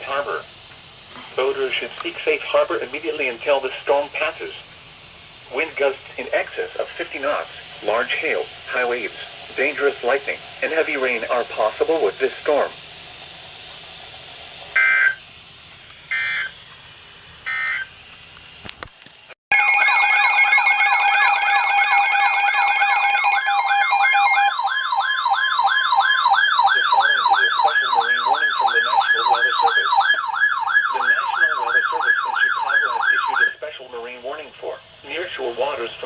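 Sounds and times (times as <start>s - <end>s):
siren-like warble: 17.5s - 17.9s, 19.5s - 33.6s
digital data bursts: 26.3s - 33.6s.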